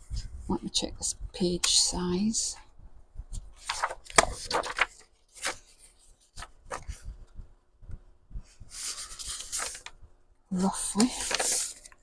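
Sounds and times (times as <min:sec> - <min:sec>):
paper pages rustling: 0:03.3 - 0:07.3, 0:08.8 - 0:10.0, 0:10.6 - 0:12.0.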